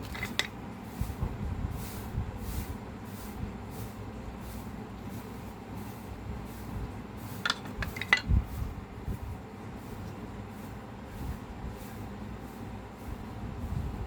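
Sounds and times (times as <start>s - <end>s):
kitchen utensils clinking: 0.0s - 0.6s, 7.4s - 8.4s.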